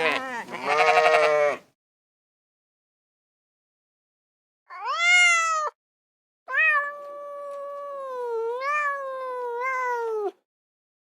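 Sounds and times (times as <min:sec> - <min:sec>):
cat meowing: 0:00.0 - 0:01.6, 0:04.7 - 0:05.8, 0:06.5 - 0:10.4.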